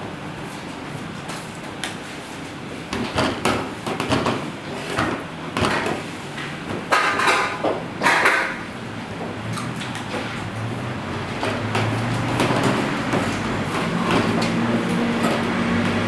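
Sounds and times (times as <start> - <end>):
metal kitchenware clattering: 6.9 - 8.6.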